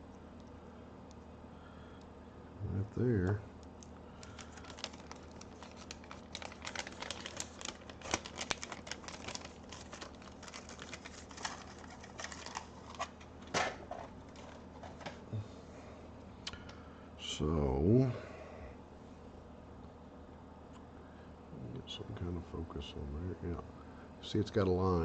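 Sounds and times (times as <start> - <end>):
plastic packaging crinkling: 4.2 - 15.2.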